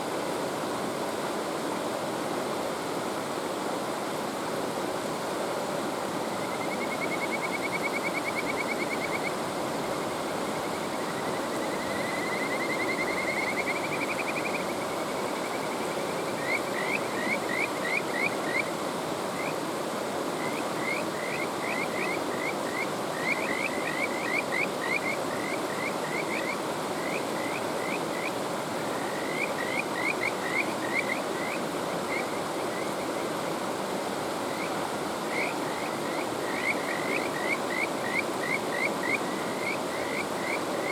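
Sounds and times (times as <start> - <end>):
mountain stream rushing: 0.0 - 40.9
frogs trilling: 6.3 - 19.6, 20.4 - 33.3, 34.4 - 40.9.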